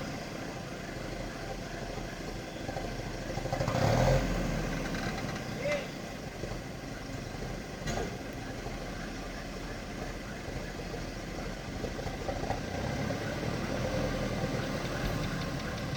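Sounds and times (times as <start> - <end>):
diesel engine idling: 0.0 - 15.9.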